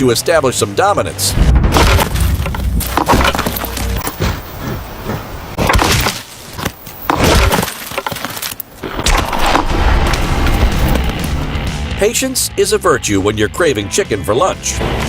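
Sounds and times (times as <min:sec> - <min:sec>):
goat horns clashing: 0:01.8 - 0:09.7.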